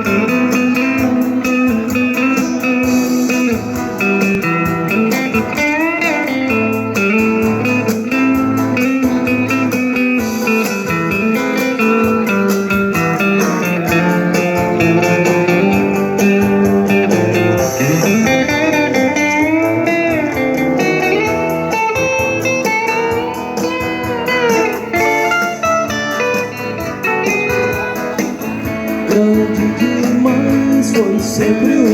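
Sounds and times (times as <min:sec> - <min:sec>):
backing music: 0:00.0 - 0:31.9
lead guitar sliding notes: 0:00.0 - 0:31.9.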